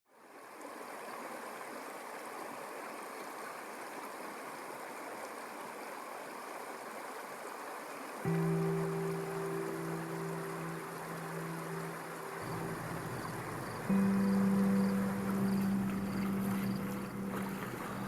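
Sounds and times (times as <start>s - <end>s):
stream flowing: 0.1s - 18.0s
music with low sustained notes: 8.3s - 18.0s.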